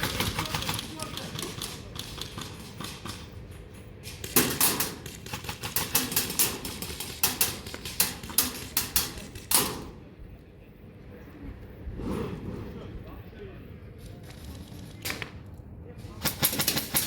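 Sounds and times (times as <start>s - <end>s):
airsoft guns firing: 0.0s - 3.4s, 4.0s - 9.9s, 16.2s - 17.0s.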